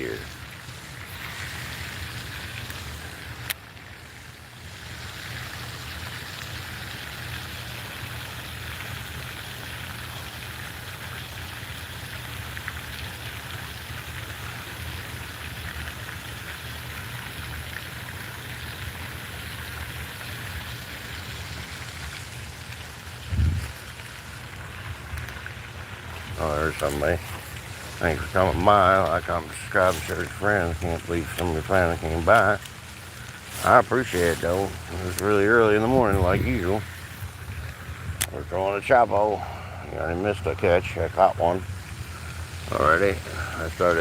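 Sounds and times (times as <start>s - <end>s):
steady outdoor hiss: 0.0s - 44.0s
low rumble: 23.2s - 23.8s.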